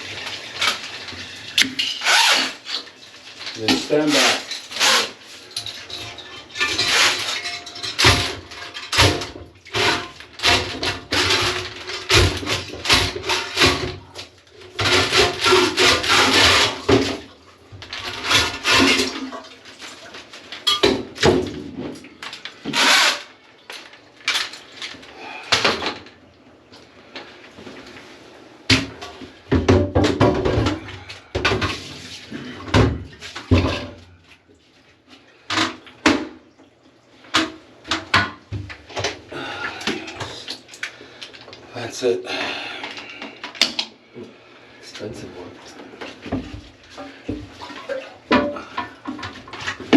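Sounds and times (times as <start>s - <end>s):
rubbing and scraping: 0.0s - 8.3s, 14.7s - 17.2s
water sloshing and splashing: 0.0s - 49.9s.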